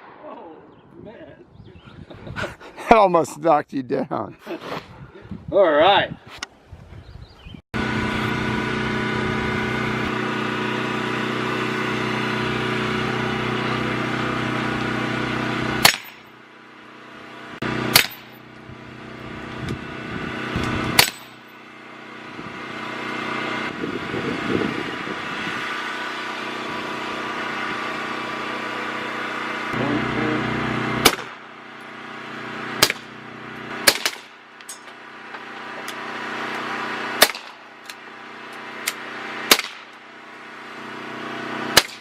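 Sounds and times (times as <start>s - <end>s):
idling engine hum: 7.8s - 42.0s
gunshots: 15.8s - 16.2s, 17.9s - 18.3s, 31.0s - 31.4s, 32.8s - 33.2s, 33.8s - 34.4s, 37.2s - 37.6s, 39.5s - 39.9s, 41.8s - 42.0s.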